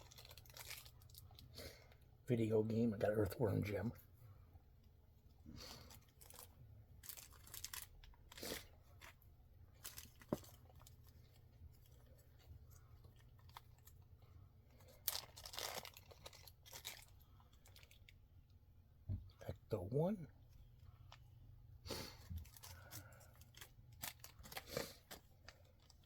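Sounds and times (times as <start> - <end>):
packaging rustling and tearing: 0.0 - 1.4, 5.8 - 12.2, 14.8 - 18.1, 22.3 - 26.0.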